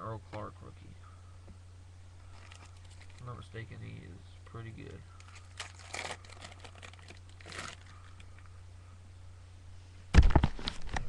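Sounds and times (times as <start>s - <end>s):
low electrical hum: 0.0s - 11.0s
wrapper crinkling: 2.3s - 3.3s, 5.2s - 8.5s
wrapper ripping open: 5.2s - 8.3s.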